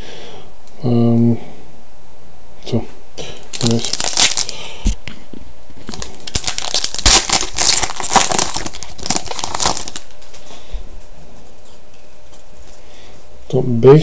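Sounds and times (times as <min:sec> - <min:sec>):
plastic wrapper tearing and crinkling: 0:03.5 - 0:04.6, 0:05.8 - 0:10.4.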